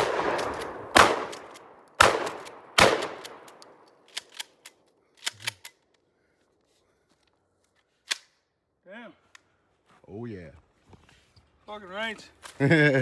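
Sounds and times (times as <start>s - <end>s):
gunshots echoing: 0.0s - 3.9s.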